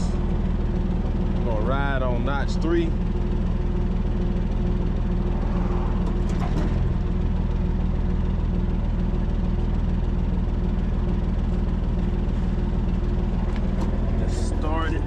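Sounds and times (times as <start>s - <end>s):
truck diesel engine running: 0.0s - 15.0s.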